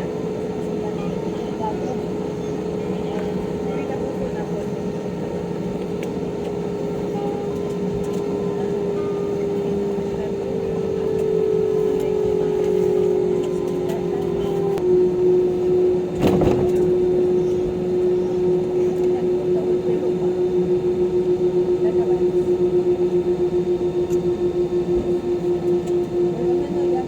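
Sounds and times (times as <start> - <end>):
aircraft engine rumble: 0.0 - 27.0
pulsing humming tone: 0.0 - 27.0
thump: 16.2 - 16.8.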